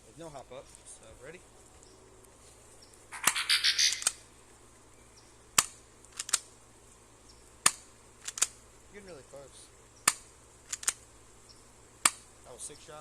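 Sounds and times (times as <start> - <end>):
quick small clicks: 3.2 - 4.2, 5.6 - 6.5, 7.6 - 8.6, 10.1 - 11.0
airsoft pistol shot snap: 7.6 - 8.4, 10.0 - 10.3, 12.0 - 12.3.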